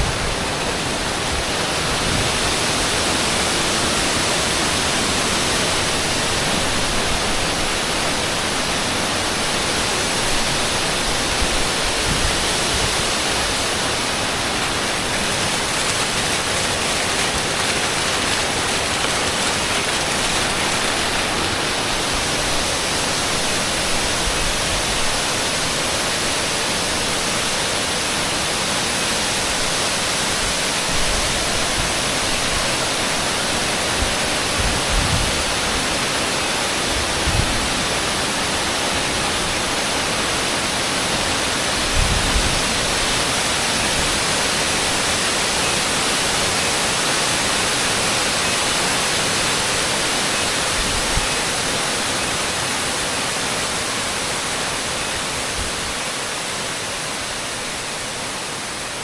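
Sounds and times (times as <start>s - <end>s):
waterfall rushing: 0.0s - 30.9s.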